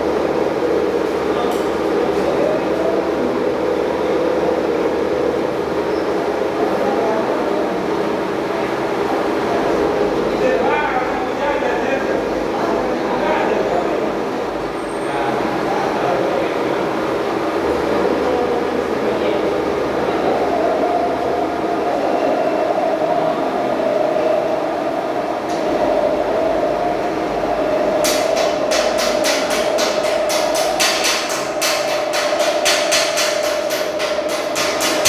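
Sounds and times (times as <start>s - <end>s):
whining machine drone: 0.0s - 35.0s
hammer strikes on metal: 28.0s - 35.0s.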